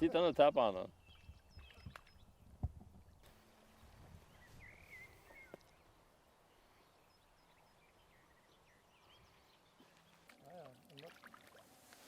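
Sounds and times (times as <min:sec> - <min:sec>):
faint outdoor background: 0:00.0 - 0:12.0
faint chirp: 0:03.6 - 0:10.6.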